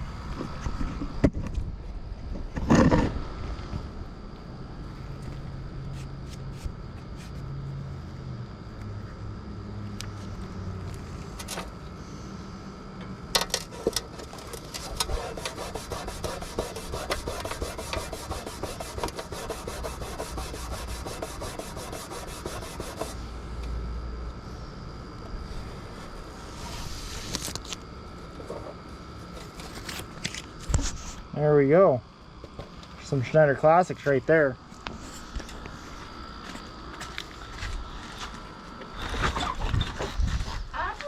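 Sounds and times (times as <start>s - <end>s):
hand rubbing decal on metal: 13.4s - 23.2s.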